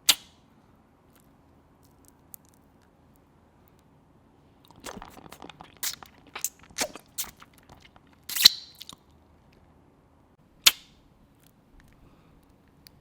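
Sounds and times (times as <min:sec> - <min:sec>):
crunchy food being chewed: 0:04.6 - 0:09.1.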